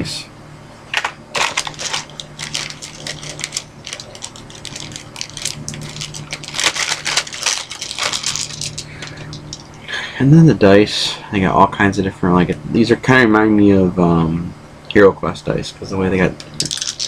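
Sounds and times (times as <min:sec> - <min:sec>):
steady low hum: 0:00.0 - 0:17.0
packaging crinkling and clicking: 0:01.0 - 0:09.8, 0:16.4 - 0:17.0.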